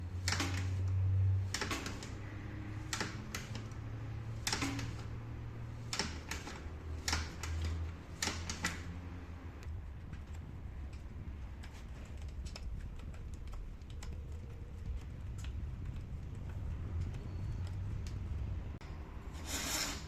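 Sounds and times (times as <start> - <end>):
sharp clicks and clacks: 9.6 - 18.9.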